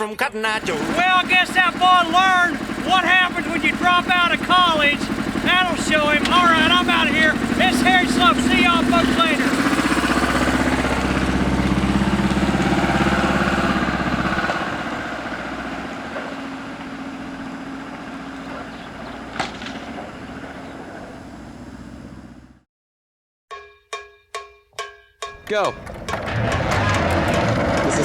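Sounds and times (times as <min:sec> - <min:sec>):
vehicle engine moving off: 0:00.6 - 0:22.6, 0:25.9 - 0:28.0.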